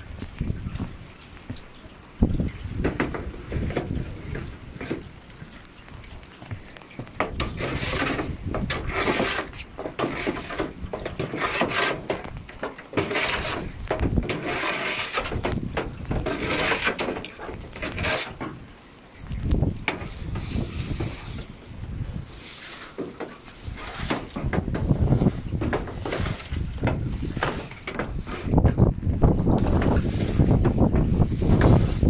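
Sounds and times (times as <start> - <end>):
wind rumbling on microphone: 0.0 - 22.8, 23.5 - 32.0
stiff brush scrubbing wet roof: 2.8 - 18.7, 19.4 - 32.0.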